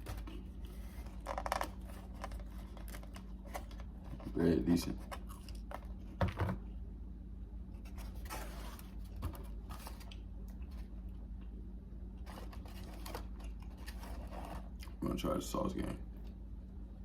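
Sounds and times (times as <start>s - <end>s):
handling rustles: 0.0s - 6.6s, 7.8s - 10.9s, 12.2s - 14.8s
steady low hum: 0.0s - 17.0s
chewing bread: 5.0s - 6.2s.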